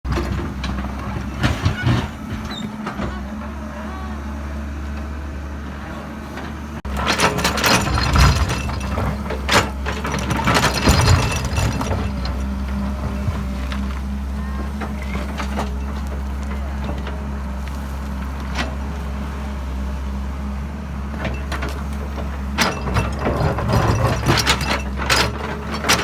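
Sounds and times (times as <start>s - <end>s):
heavy machinery diesel engine: 0.0s - 26.0s
metal and rock clanking: 0.1s - 3.3s, 6.5s - 17.3s, 21.2s - 26.0s.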